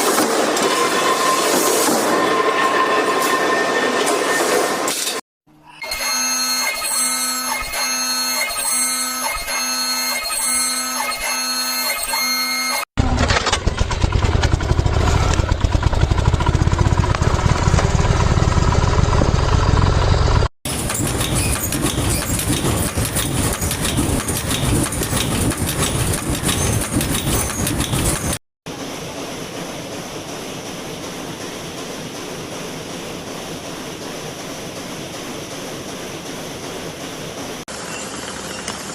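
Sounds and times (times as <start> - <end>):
heavy machine rumbling: 13.0 - 28.4
fast dense machine clatter: 13.0 - 38.9.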